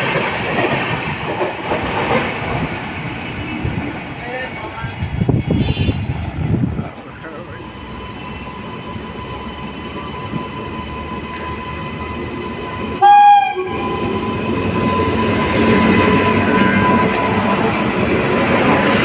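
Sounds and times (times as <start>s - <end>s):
train rumble: 0.0s - 19.0s
locomotive horn blast: 12.9s - 15.2s.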